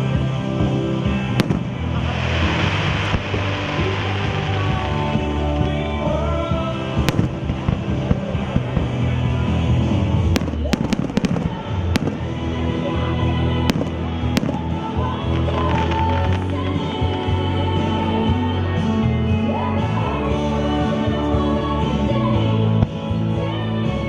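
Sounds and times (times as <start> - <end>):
loud music: 0.0 - 24.0
fireworks bangs: 1.0 - 17.4.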